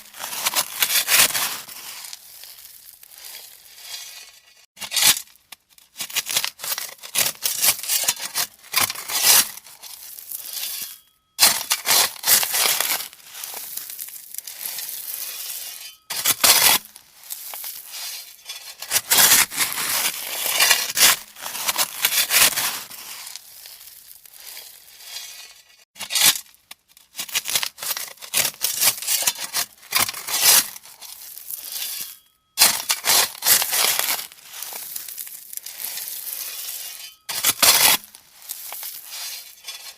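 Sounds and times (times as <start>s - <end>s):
shovel scooping gravel: 0.0s - 5.4s, 6.0s - 26.5s, 27.2s - 39.9s.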